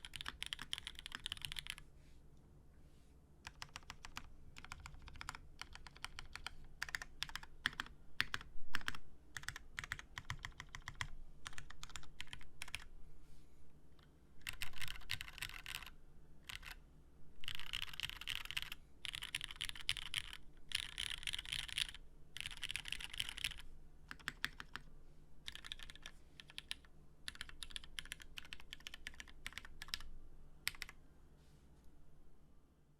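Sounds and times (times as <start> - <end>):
mechanical keyboard typing: 0.0 - 1.8, 3.4 - 12.9, 14.4 - 15.9, 16.5 - 16.8, 17.4 - 24.9, 25.5 - 30.1, 30.7 - 31.0.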